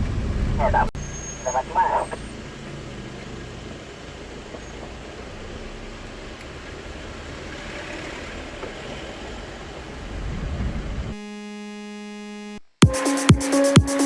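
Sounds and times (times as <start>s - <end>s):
vehicle rumble and hiss: 0.0s - 11.2s
electronic buzzing tone: 11.2s - 12.6s
electronic dance music: 12.2s - 14.0s.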